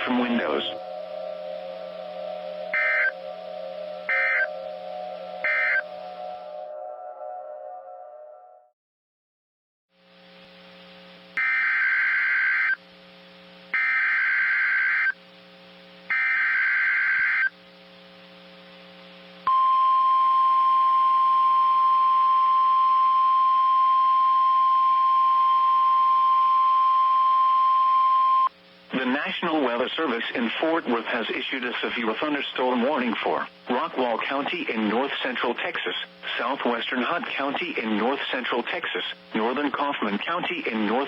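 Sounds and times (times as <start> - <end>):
receiver hiss and hum: 0.0 - 6.9, 9.9 - 41.0
warbling data tones: 0.0 - 8.4
steady alarm tone: 0.0 - 8.6, 11.4 - 12.8, 13.8 - 15.2, 16.1 - 17.5.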